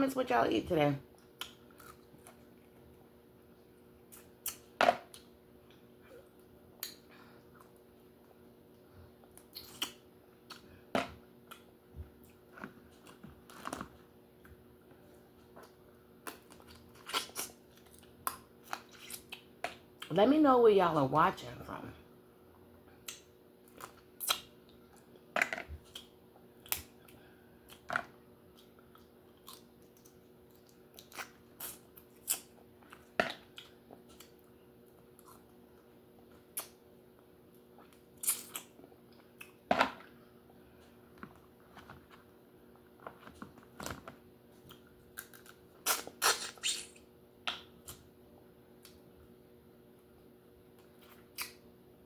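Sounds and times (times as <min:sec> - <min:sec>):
faint steady hum: 0:00.0 - 0:52.0
chewing and shell cracking: 0:44.6 - 0:46.9.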